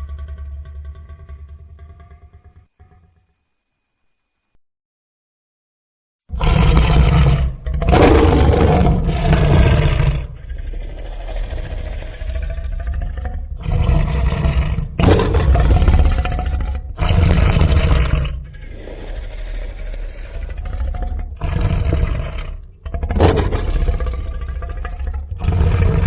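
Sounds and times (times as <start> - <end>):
creature growling: 6.3 - 26.0
creature roaring: 6.3 - 26.0.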